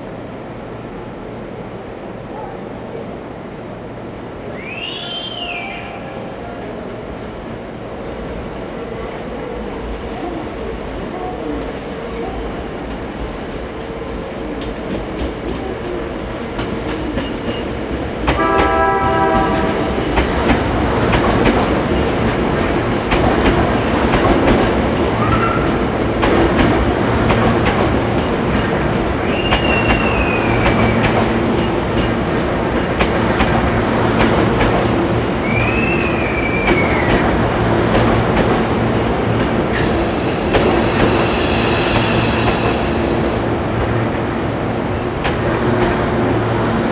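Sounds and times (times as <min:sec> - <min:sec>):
train wheels squealing: 0:04.5 - 0:06.3, 0:17.1 - 0:17.8, 0:24.9 - 0:26.5, 0:28.1 - 0:32.2, 0:35.2 - 0:37.8, 0:38.8 - 0:44.5
train rail-joint clatter: 0:12.8 - 0:46.2
train horn blast: 0:18.3 - 0:20.4.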